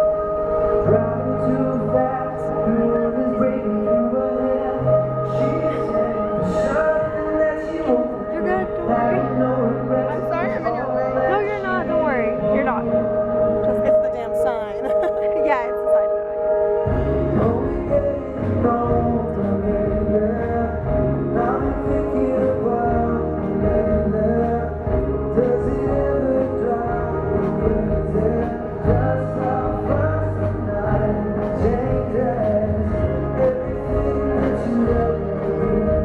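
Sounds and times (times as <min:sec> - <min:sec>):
bass guitar: 0:00.0 - 0:36.0
person singing: 0:00.8 - 0:36.0
drums: 0:11.6 - 0:36.0.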